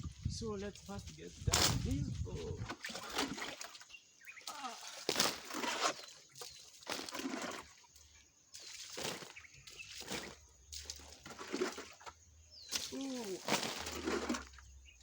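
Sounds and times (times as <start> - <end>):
water splashing onto masonry: 2.8 - 7.4.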